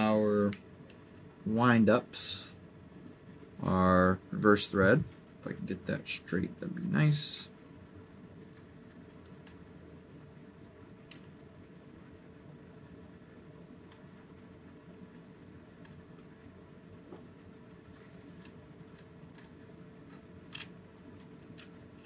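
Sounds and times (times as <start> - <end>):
loud clock click: 11.1 - 11.3.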